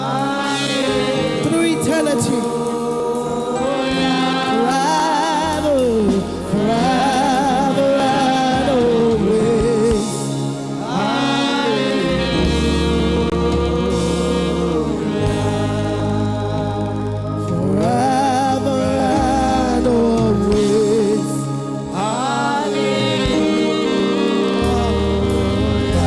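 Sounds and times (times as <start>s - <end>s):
bass line: 0.0s - 26.0s
solo singer with vibrato: 0.0s - 26.0s
sustained keyboard chords: 0.0s - 26.0s.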